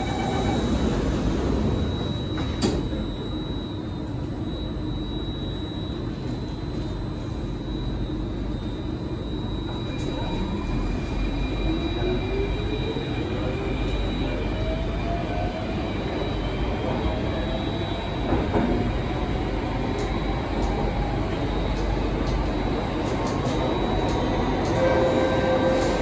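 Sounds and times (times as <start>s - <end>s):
wheels rumbling on rail: 0.0s - 3.1s, 9.9s - 26.0s.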